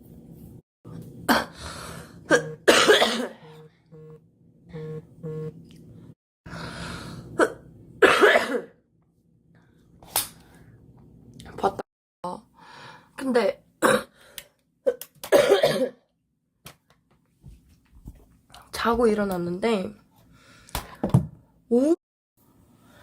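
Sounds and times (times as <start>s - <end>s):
woman coughing: 2.3s - 3.4s, 7.4s - 8.8s, 14.9s - 16.0s.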